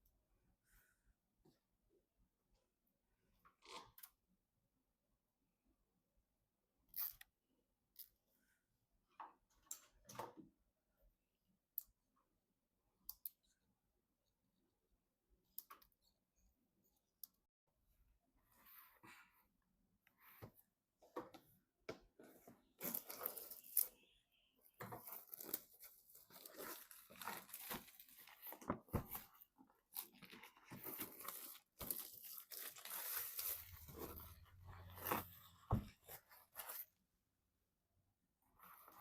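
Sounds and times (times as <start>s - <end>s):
packaging crinkling and rustling: 25.0s - 36.9s.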